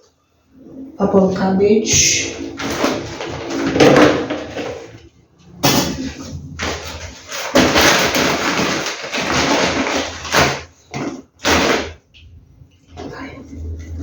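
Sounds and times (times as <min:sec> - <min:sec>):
plastic bags rustling: 0:02.4 - 0:12.0
produce being set down: 0:02.6 - 0:05.0, 0:05.6 - 0:12.0.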